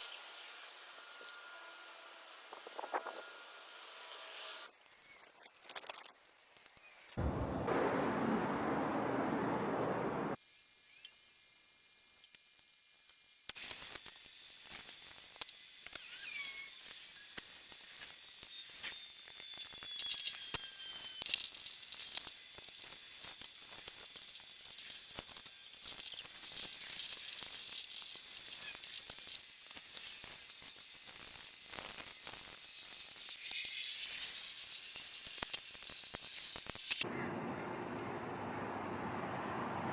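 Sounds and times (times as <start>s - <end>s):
welding arc crackling: 13.1s - 37.1s.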